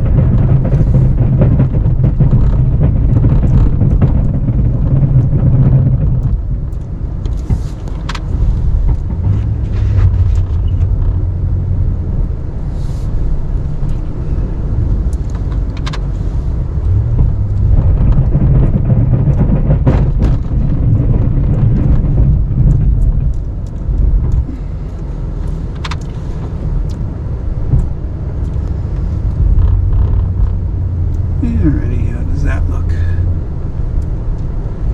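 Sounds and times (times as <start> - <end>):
sharp knocks and clicks: 0.0 - 11.2, 15.0 - 16.1, 16.7 - 27.1, 27.7 - 31.3
truck engine drone: 0.0 - 34.9.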